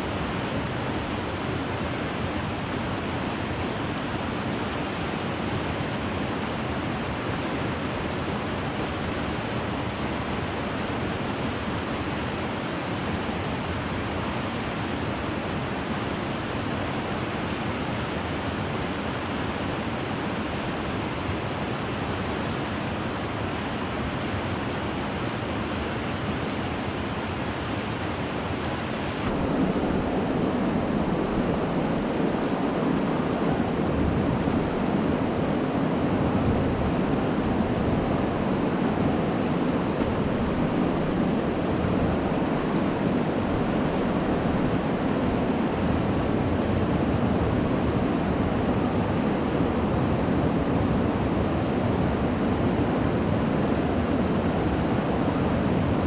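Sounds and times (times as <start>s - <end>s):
stream water rushing: 0.0s - 49.6s.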